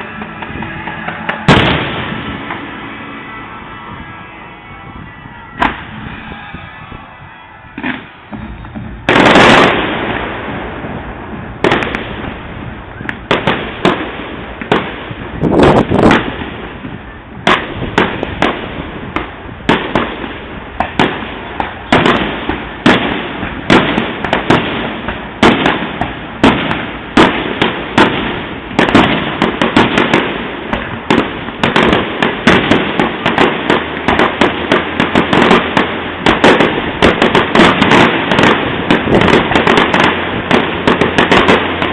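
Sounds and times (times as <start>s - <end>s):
fireworks bangs and pops: 0.0s - 41.9s.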